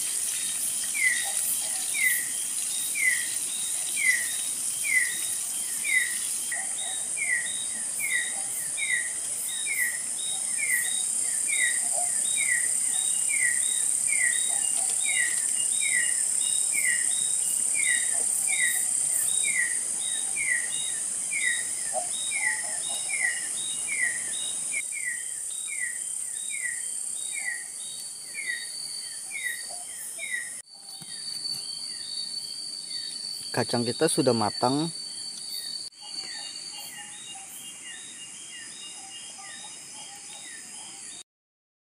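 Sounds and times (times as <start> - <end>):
high-pitched insect drone: 0.0 - 41.2
bird chirping: 0.4 - 41.2.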